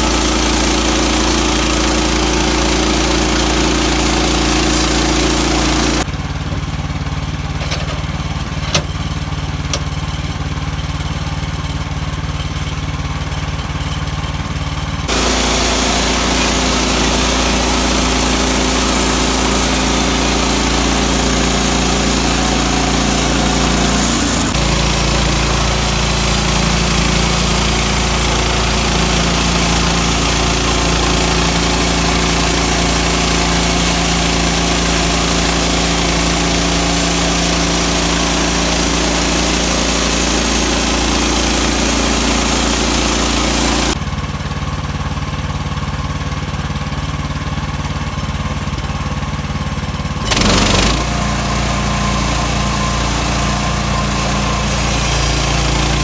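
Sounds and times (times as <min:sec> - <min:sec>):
saw cutting through log: 0:00.0 - 0:06.1, 0:15.0 - 0:44.0, 0:50.0 - 0:56.0
sawmill engine running: 0:00.0 - 0:56.0.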